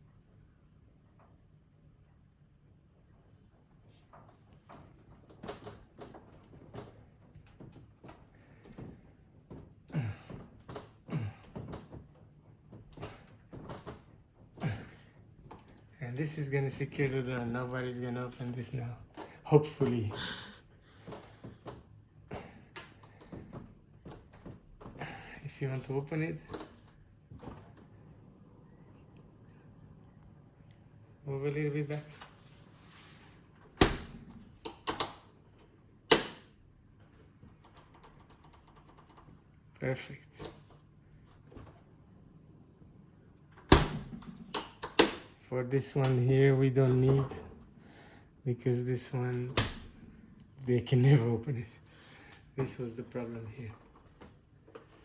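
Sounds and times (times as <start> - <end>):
freezer door thunks: 33.7 - 34.6, 43.6 - 45.3
freezer lock clicks and knocks: 43.7 - 45.3.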